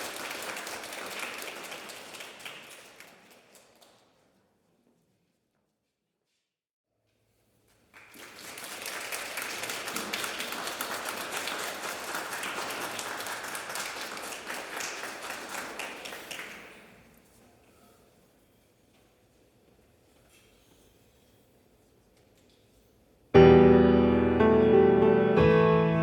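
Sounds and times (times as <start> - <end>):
audience applauding: 0.0 - 4.0, 7.9 - 17.0.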